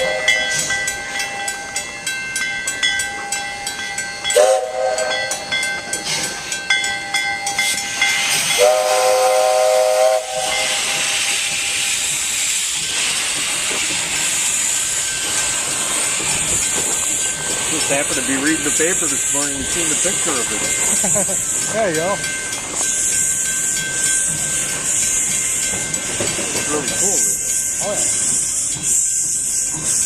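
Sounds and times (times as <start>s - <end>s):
steam whistle blasts: 0.0s - 0.7s, 4.4s - 5.3s, 8.4s - 11.3s
locomotive bell ringing: 0.0s - 30.0s
steam hissing: 7.5s - 30.0s.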